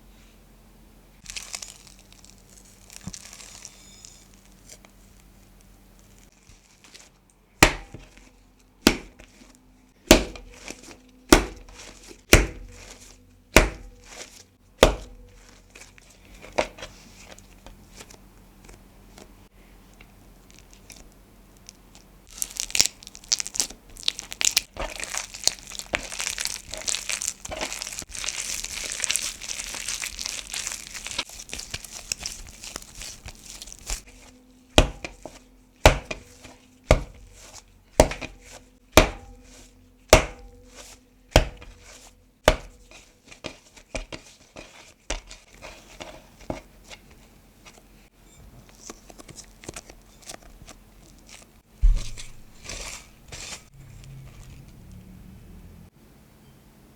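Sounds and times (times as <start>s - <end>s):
dough being kneaded by hand: 1.2s - 55.3s
dough slapping on work surface: 7.6s - 15.6s, 31.1s - 46.7s, 51.8s - 53.7s.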